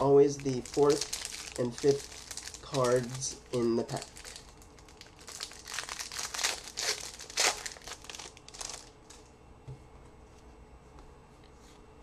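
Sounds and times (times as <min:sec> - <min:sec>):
card pack wrapper tearing and crinkling: 0:00.0 - 0:09.2.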